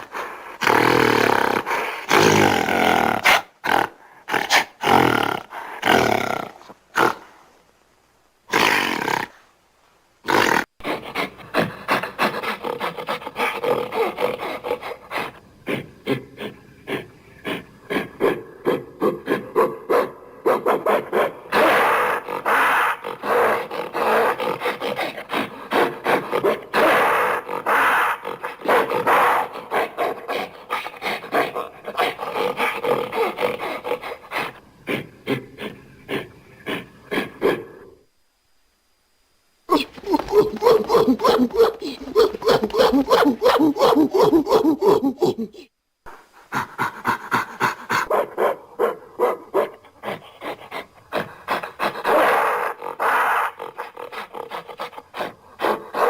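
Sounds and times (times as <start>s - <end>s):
gorilla calling: 39.7s - 45.7s.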